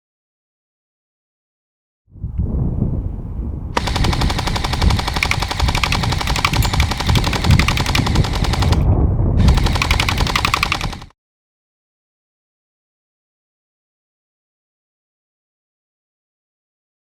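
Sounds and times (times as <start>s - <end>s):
wind rumble on microphone: 2.1s - 11.1s
gearbox motor whining: 3.8s - 8.8s, 9.4s - 11.1s
airsoft gun rapid clicking: 3.8s - 11.1s.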